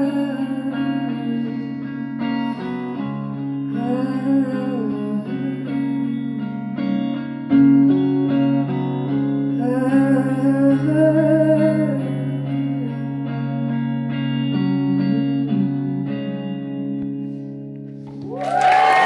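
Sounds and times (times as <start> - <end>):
woman singing: 0.0 - 7.1, 9.6 - 13.3
guitar chords: 0.0 - 19.0.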